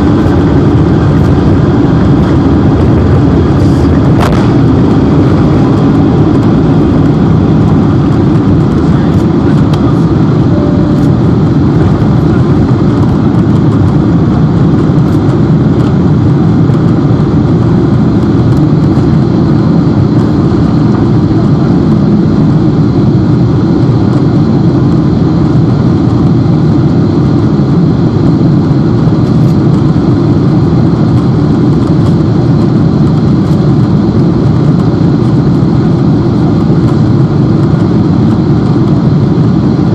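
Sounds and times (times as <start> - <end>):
jet engines roaring at takeoff: 0.0 - 39.9.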